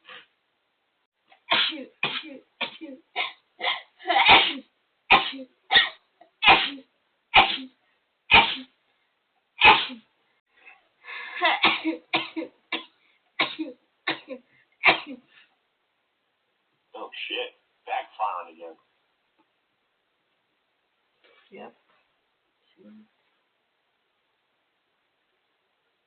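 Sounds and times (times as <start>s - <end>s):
person sneezing: 1.5s - 8.8s, 9.6s - 10.0s.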